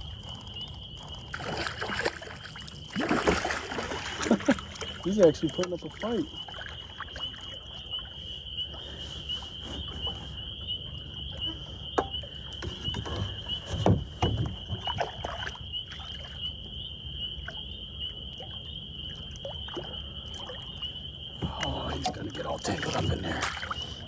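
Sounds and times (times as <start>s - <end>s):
fish splashing: 1.0s - 10.5s, 21.5s - 24.0s
knocks against a kayak: 12.0s - 15.5s.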